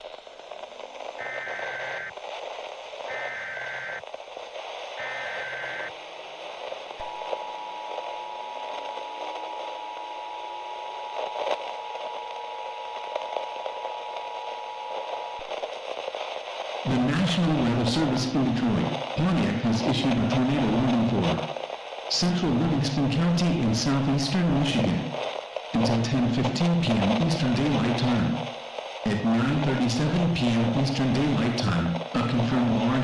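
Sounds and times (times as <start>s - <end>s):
two-tone attention signal: 1.2s - 2.1s, 3.1s - 4.0s, 5.0s - 5.9s
warbling data bursts: 1.2s - 2.1s, 3.1s - 4.0s, 5.0s - 5.9s
radio static hiss: 1.2s - 2.2s, 3.0s - 4.1s, 5.0s - 6.0s, 16.9s - 33.0s.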